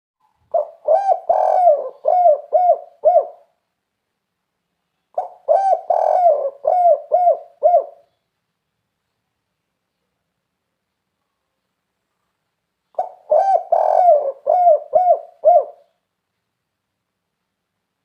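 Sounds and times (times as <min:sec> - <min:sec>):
dove cooing: 0:00.5 - 0:03.5, 0:05.2 - 0:08.1, 0:13.0 - 0:16.0.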